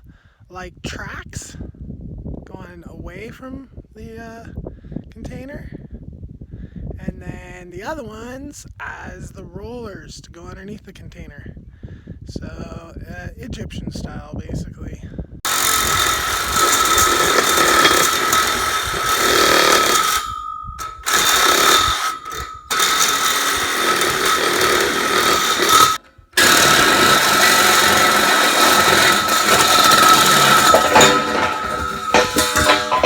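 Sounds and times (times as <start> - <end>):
backhoe engine and machinery noise: 15.5 - 33.0.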